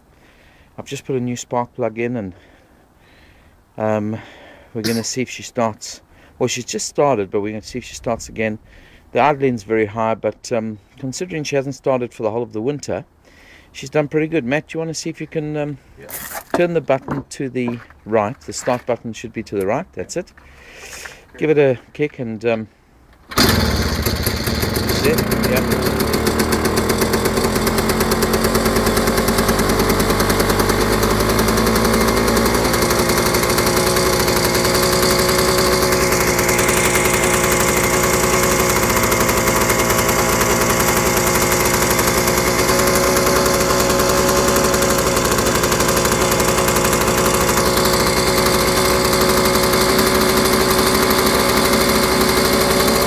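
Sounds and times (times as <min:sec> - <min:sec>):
motorcycle two-stroke engine idling: 0:23.4 - 0:53.0.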